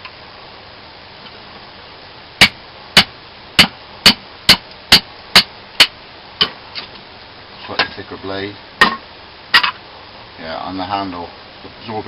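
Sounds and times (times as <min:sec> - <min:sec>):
knife chopping wood: 0:02.4 - 0:05.9.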